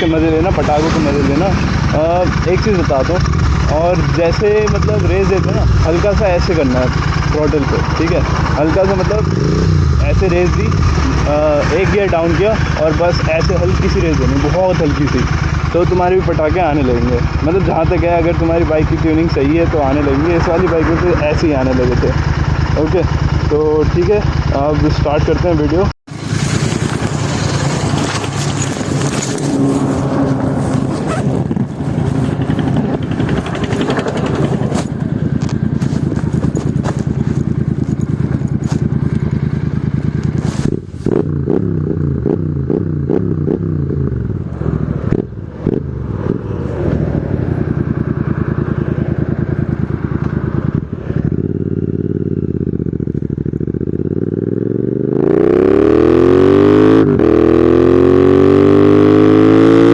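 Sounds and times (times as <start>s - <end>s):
motorcycle engine revving: 0.0s - 59.9s
exhaust pops and crackles: 0.1s - 9.4s, 24.9s - 41.6s, 45.0s - 46.4s.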